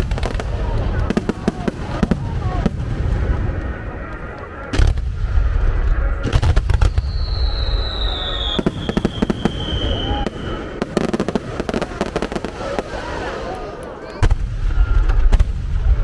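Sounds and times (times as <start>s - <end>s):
fireworks booming: 0.0s - 16.0s
fireworks crackling bursts: 0.0s - 16.0s
firework whistle gliding down: 6.3s - 13.5s.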